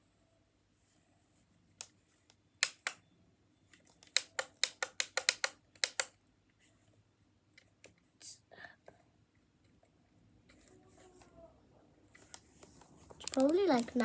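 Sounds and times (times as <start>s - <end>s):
alarm clock buttons clicking: 2.6s - 3.0s, 4.1s - 6.1s.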